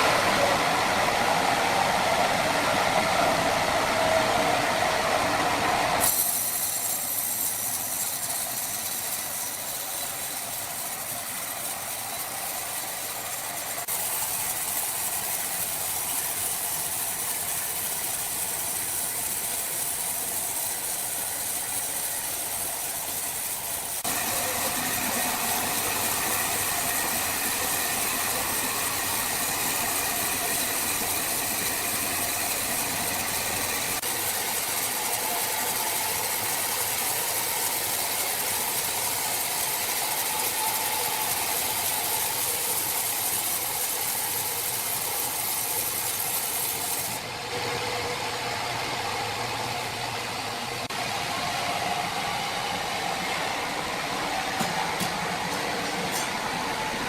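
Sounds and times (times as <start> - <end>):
sawmill machinery running: 0.0 - 57.0.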